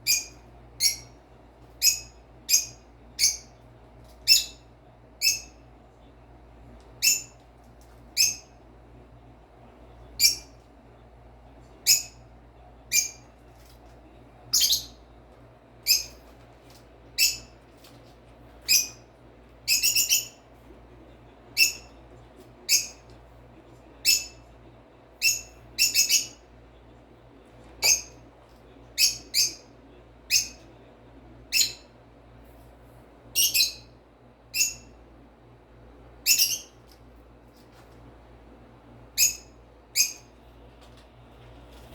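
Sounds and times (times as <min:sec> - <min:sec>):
parrot chirping: 0:00.0 - 0:01.2, 0:01.8 - 0:03.5, 0:04.3 - 0:04.6, 0:05.2 - 0:05.6, 0:07.0 - 0:07.4, 0:08.2 - 0:08.5, 0:10.2 - 0:10.5, 0:11.8 - 0:12.2, 0:12.9 - 0:13.2, 0:14.5 - 0:15.0, 0:15.8 - 0:16.2, 0:17.2 - 0:17.6, 0:18.7 - 0:19.0, 0:19.7 - 0:20.4, 0:21.6 - 0:21.9, 0:22.7 - 0:23.0, 0:24.0 - 0:24.4, 0:25.2 - 0:26.4, 0:27.8 - 0:28.2, 0:29.0 - 0:29.7, 0:30.3 - 0:30.6, 0:31.5 - 0:31.9, 0:33.3 - 0:33.9, 0:34.5 - 0:35.0, 0:36.2 - 0:36.8, 0:39.2 - 0:40.3.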